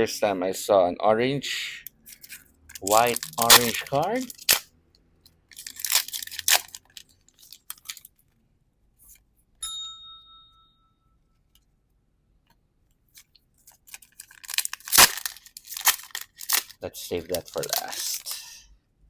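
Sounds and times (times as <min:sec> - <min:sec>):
trading cards being handled: 0:02.0 - 0:04.6, 0:05.5 - 0:08.1, 0:13.2 - 0:18.6.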